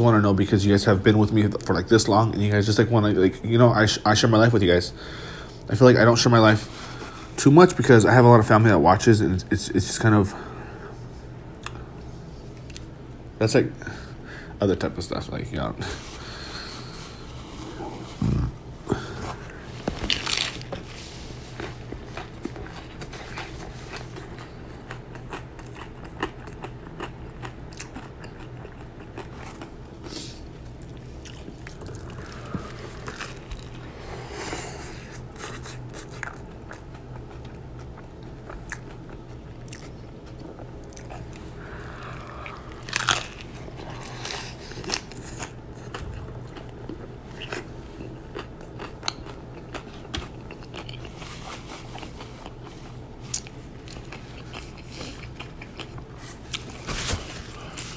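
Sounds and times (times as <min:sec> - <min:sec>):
chewing crunchy food: 0:16.0 - 0:57.9.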